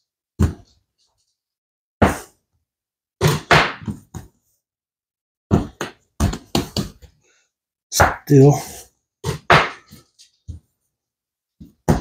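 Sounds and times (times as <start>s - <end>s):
hands slapping bread dough: 3.2s - 4.3s.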